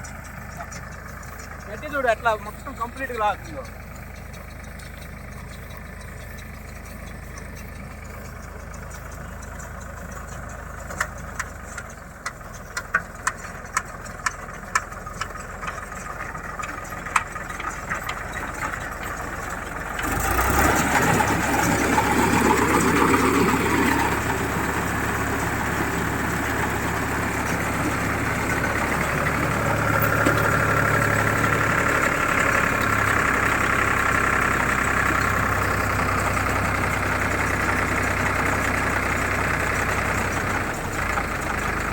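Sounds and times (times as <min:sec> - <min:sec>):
sharp metallic knocks from baler: 0:00.0 - 0:33.0
tractor engine running a baler: 0:00.0 - 0:41.9.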